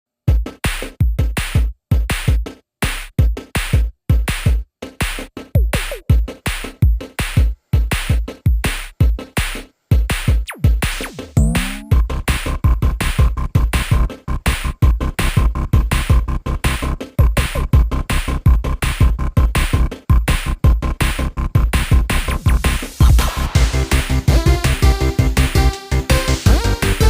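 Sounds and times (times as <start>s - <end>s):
electronic music with drum beat: 0.3s - 27.0s
rising synth sweep: 11.4s - 12.0s.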